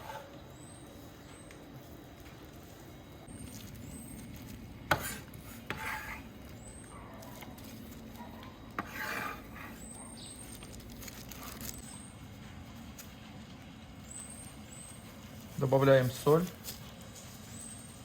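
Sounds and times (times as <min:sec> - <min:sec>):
knife scraping on board: 0:00.0 - 0:00.4, 0:04.4 - 0:06.6, 0:08.8 - 0:10.4.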